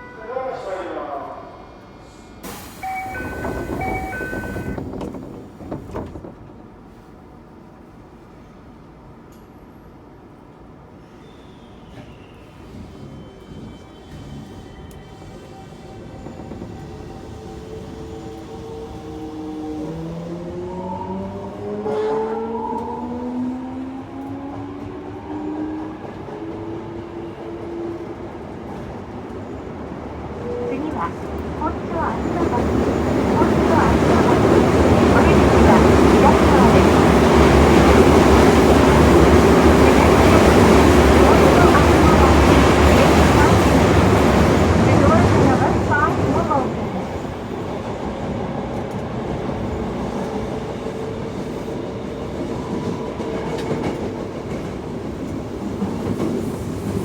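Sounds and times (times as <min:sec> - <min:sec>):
train car humming: 0:00.0 - 0:09.5, 0:29.9 - 0:57.0
door gear hiss: 0:02.4 - 0:04.1
two-note door chime: 0:02.8 - 0:04.8.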